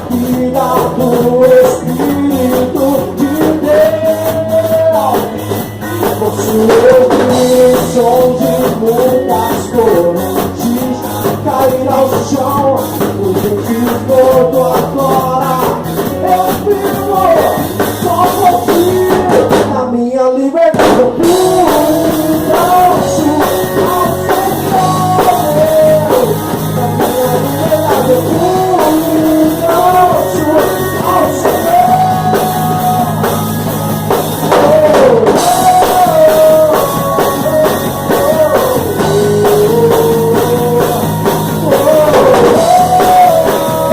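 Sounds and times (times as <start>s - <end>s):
melodic lead line: 0.0s - 19.6s, 21.1s - 43.9s
drum kit beat: 0.0s - 20.0s, 20.6s - 43.9s
bass guitar: 0.0s - 43.9s.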